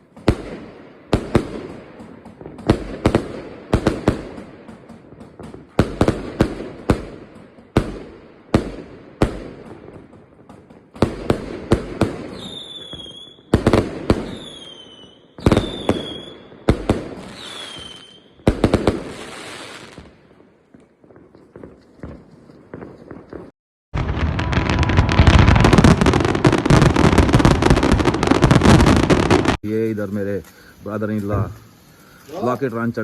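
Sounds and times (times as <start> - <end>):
fireworks bangs and crackles: 0.0 - 33.0
falling firework whistles: 12.3 - 13.5, 14.2 - 16.5, 17.2 - 18.4.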